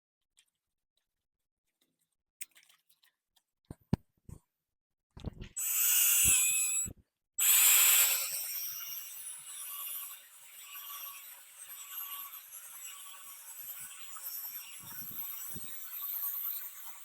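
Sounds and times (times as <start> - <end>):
drill motor whining: 5.6 - 17.0.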